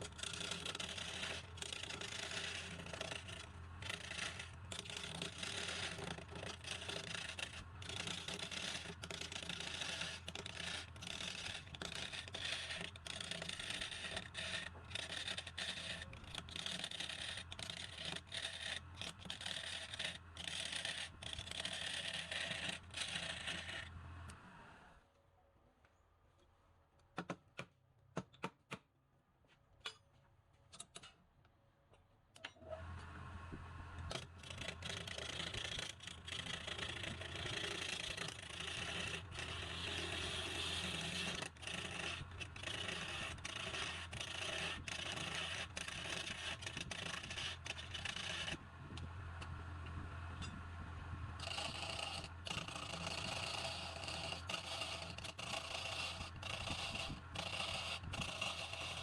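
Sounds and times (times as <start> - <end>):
tool scraping spinning wood: 0.0 - 24.7, 32.7 - 59.0
lathe motor humming: 20.7 - 24.9, 51.3 - 59.0.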